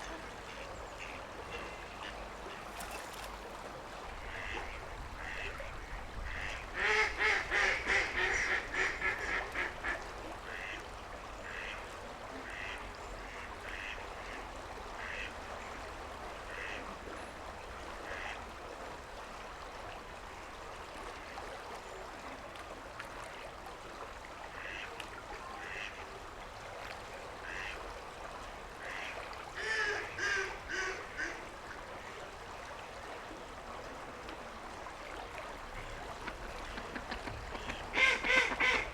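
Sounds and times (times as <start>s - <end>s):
ducks quacking: 24.6s - 24.9s, 25.6s - 25.9s, 36.2s - 38.9s.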